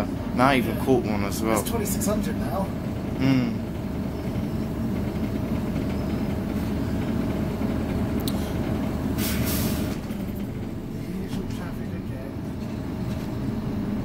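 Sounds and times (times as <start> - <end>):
bus engine and road rumble: 0.0 - 14.0
compressed air hiss: 9.2 - 9.9.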